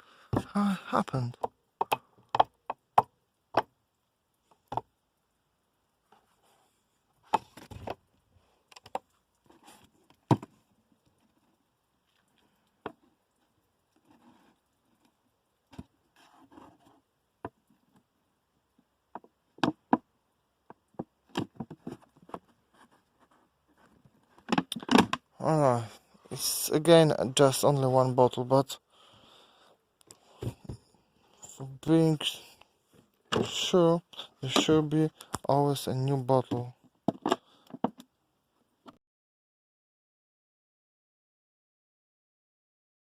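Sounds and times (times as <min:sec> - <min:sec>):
knocks and clicks of plastic bottles: 0:01.4 - 0:03.8, 0:04.6 - 0:04.9, 0:10.2 - 0:10.6, 0:19.1 - 0:22.5, 0:24.4 - 0:25.3, 0:37.0 - 0:38.0.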